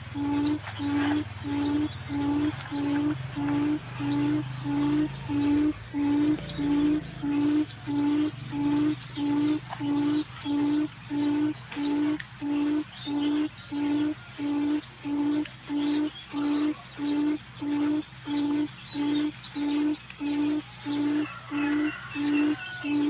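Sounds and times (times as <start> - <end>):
faint high bird chirps: 0.0 - 23.0
low hooting bird call: 0.0 - 23.0
steady low hum: 0.0 - 23.0.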